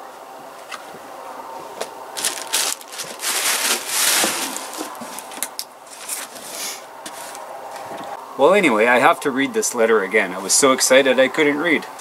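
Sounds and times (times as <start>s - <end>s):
packaging crinkling and rustling: 1.8s - 7.4s.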